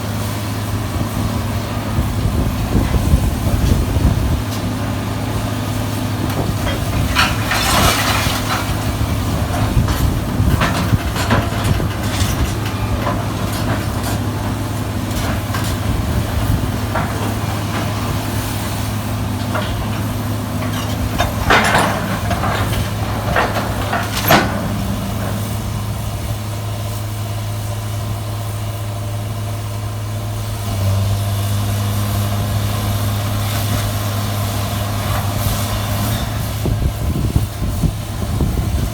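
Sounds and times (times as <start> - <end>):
power unit droning: 0.0 - 29.9
shear cutting scrap metal: 2.2 - 26.9.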